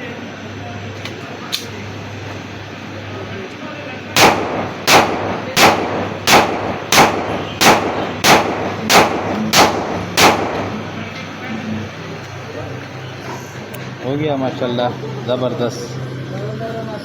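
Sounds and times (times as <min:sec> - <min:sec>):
pistol shots echoing: 0:04.2 - 0:10.9.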